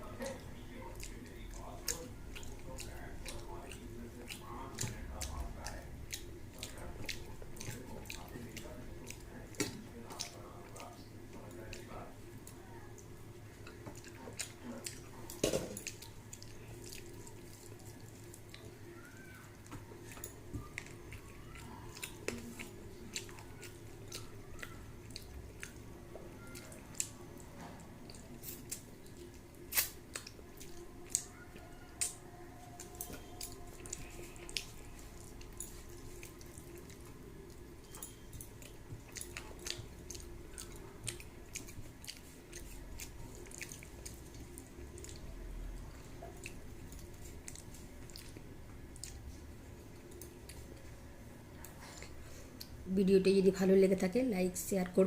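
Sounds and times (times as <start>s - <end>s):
wet chewing: 0.0s - 52.8s
steady low hum: 0.0s - 55.0s
mouth clicks and smacks: 29.7s - 30.4s.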